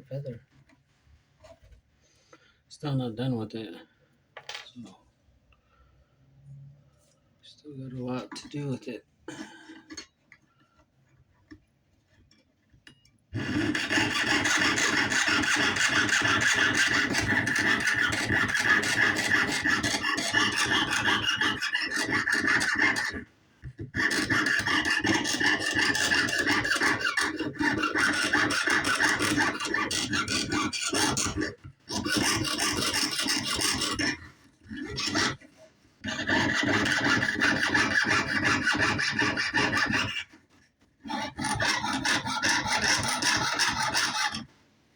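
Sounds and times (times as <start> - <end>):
saw cutting metal sheet: 13.4 - 23.3, 23.9 - 40.4, 41.0 - 44.5.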